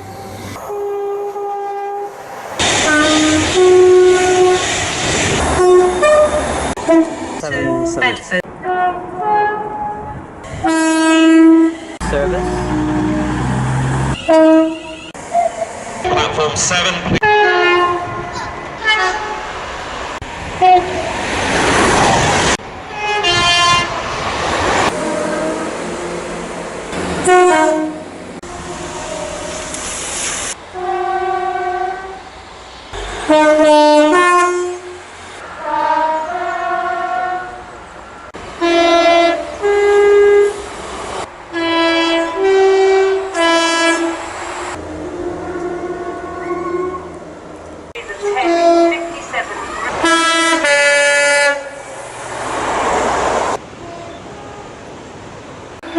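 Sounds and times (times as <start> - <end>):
rushing of passing train: 0.0 - 55.9
two-tone train horn blasts: 0.5 - 4.7, 5.4 - 13.4, 14.1 - 16.3, 17.1 - 19.5, 20.6 - 21.1, 22.9 - 24.0, 24.8 - 25.9, 27.2 - 29.5, 30.7 - 32.3, 33.0 - 35.0, 35.6 - 37.7, 38.6 - 40.6, 41.5 - 47.2, 48.0 - 49.4, 50.0 - 51.8.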